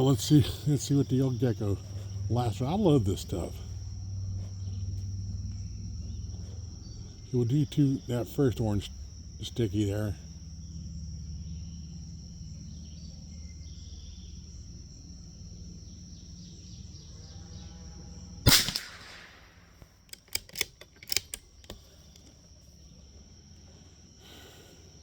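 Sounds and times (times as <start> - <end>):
rifle shot: 18.4 - 19.8
metallic clicks of rifle bolt: 18.5 - 22.4.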